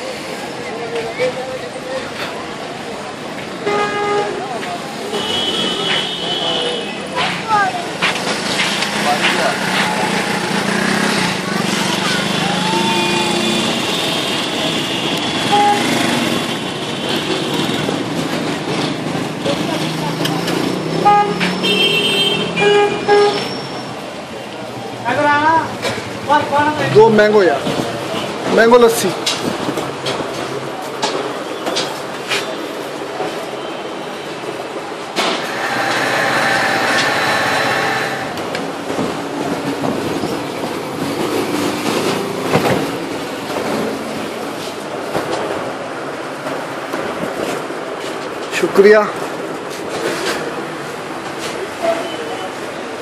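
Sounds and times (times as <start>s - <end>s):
motorcycle and small engines: 8.2s - 21.6s, 35.2s - 44.1s
electric blender motor whining: 35.5s - 38.4s.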